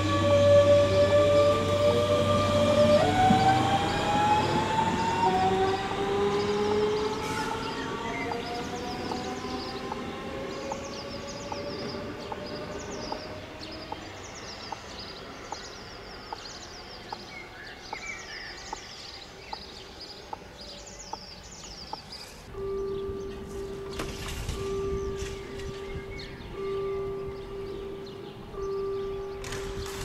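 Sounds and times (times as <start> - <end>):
electric train motor whine: 0.0 - 13.6
bird chirping: 2.9 - 30.0.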